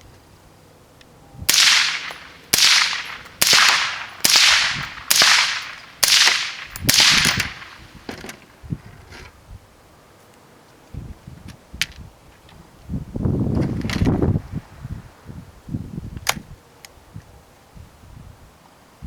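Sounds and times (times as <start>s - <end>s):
rifle shots with echo: 1.5s - 8.0s.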